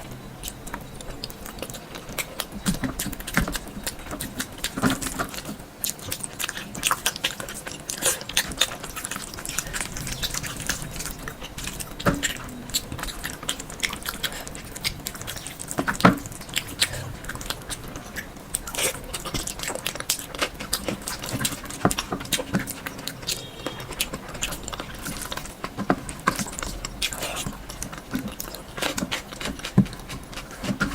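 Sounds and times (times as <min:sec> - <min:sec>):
chewing and biting: 0:00.0 - 0:30.9.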